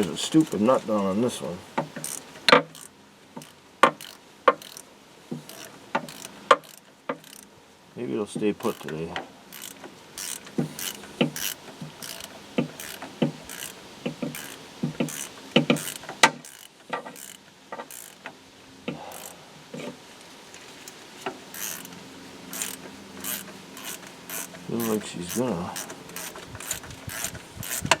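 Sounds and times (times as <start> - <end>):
ratchet wrench clicking: 1.8 - 7.5, 8.6 - 8.9, 9.5 - 18.2, 19.1 - 19.3, 20.8 - 28.0.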